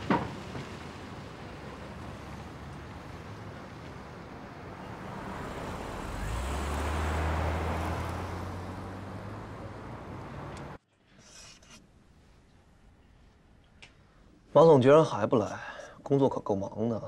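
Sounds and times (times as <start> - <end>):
car driving past: 0.0 - 10.8
traffic noise: 0.0 - 10.8.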